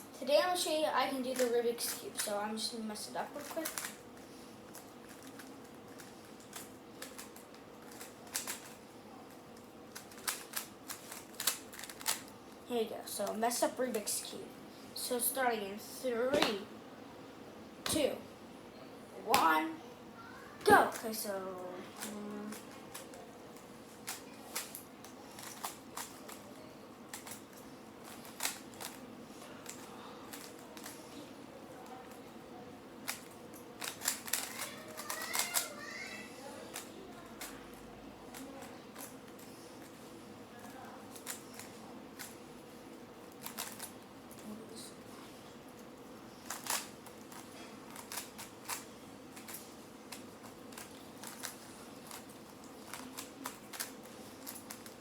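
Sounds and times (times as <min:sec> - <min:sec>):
puzzle cube plastic clicks: 0:04.7 - 0:08.8, 0:09.6 - 0:12.3, 0:27.1 - 0:29.0, 0:33.0 - 0:35.7, 0:43.4 - 0:44.0, 0:46.4 - 0:55.0.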